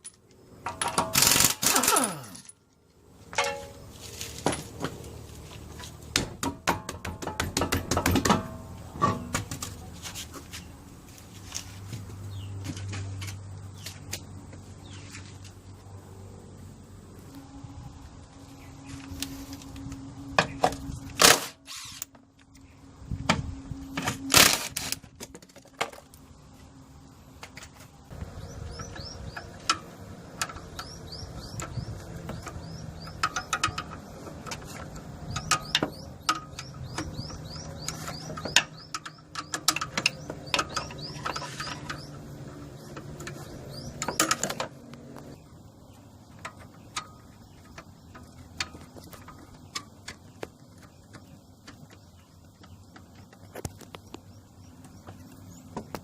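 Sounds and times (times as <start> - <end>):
hand tools knocking on metal: 6.2 - 9.4.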